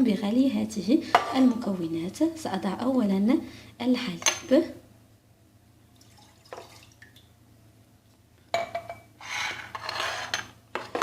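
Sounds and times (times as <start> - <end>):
milk pouring into a saucepan: 5.9 - 7.2.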